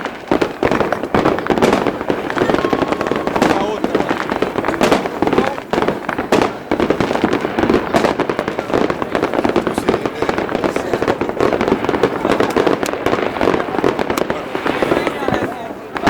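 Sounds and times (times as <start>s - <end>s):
fireworks bangs and crackles: 0.0s - 16.0s.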